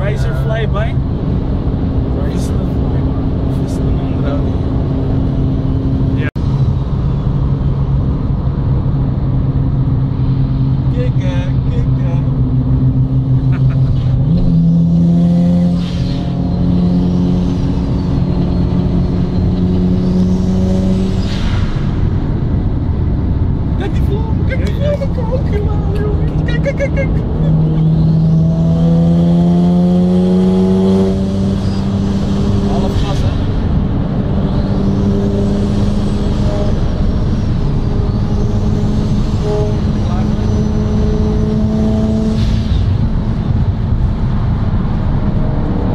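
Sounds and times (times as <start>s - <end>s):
car engine running: 0.0s - 45.9s
road noise: 0.0s - 45.9s.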